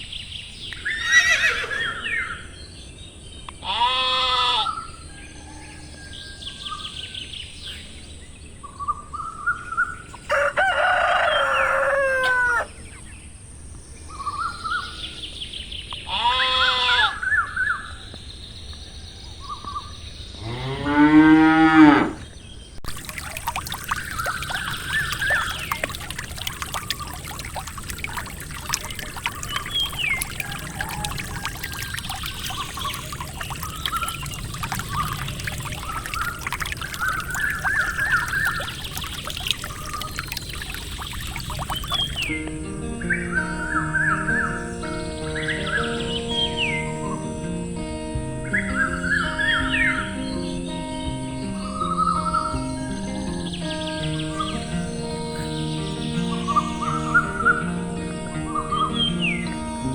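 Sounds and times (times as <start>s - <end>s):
sheep bleating: 3.6s - 4.7s
cow mooing: 20.4s - 22.2s.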